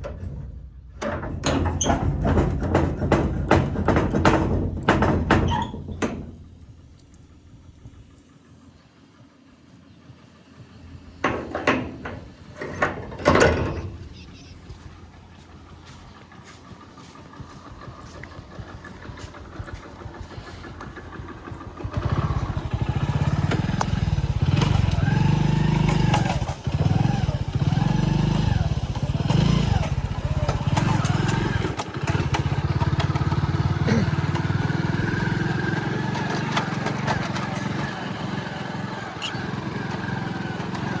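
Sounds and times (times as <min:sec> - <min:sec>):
vehicle engine running: 0:00.0 - 0:41.0.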